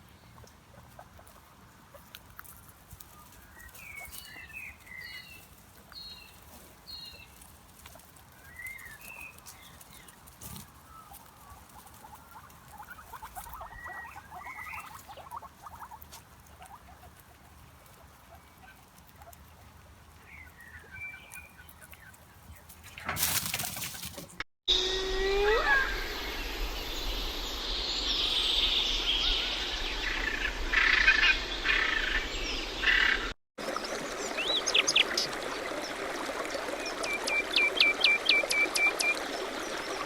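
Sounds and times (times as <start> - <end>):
small animals squeaking: 10.4 - 19.7.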